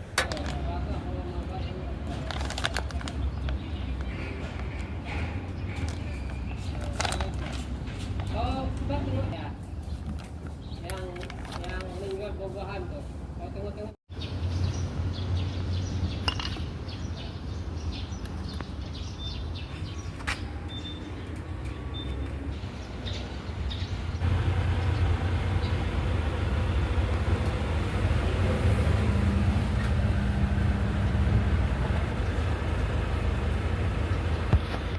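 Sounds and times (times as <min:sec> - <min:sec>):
vehicle cruising rumble: 0:00.0 - 0:13.4, 0:14.1 - 0:34.9.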